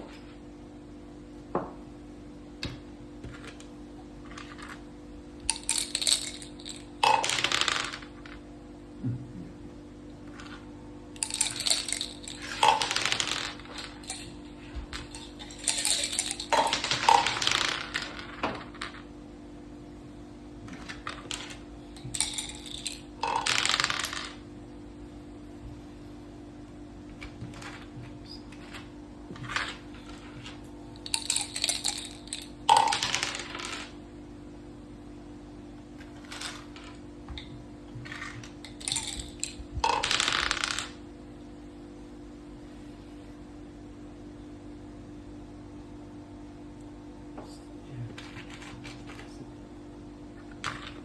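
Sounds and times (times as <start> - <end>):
dice clattering on a board: 2.6 - 4.8, 5.5 - 8.4, 10.3 - 19.1, 20.7 - 24.5, 27.2 - 34.0, 36.0 - 41.0, 48.2 - 49.4, 50.5 - 51.0.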